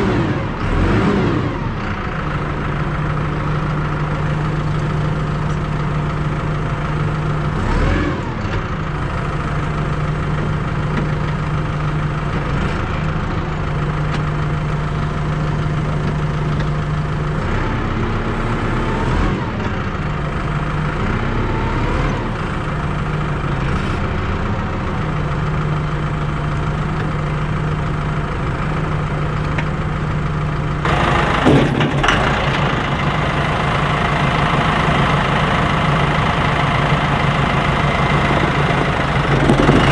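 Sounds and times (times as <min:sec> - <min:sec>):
engine idling: 0:01.7 - 0:07.6, 0:25.0 - 0:39.9.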